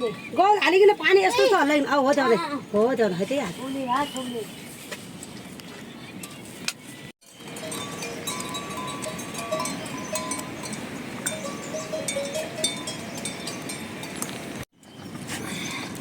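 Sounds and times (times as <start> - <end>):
livestock bells clinking: 7.2 - 14.6.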